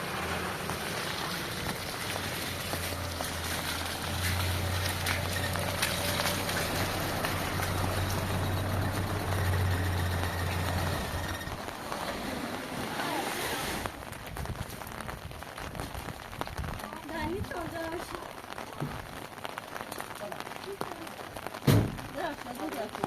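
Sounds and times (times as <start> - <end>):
heavy rain pouring: 0.0 - 23.0
low engine-like hum: 2.3 - 11.6.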